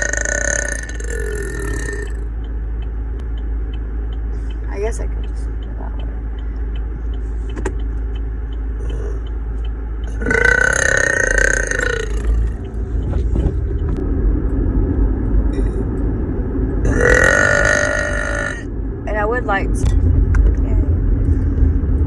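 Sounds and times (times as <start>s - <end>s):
woman burping: 0.0s - 2.2s, 10.1s - 12.6s, 16.9s - 18.7s
car rumble: 0.0s - 22.0s.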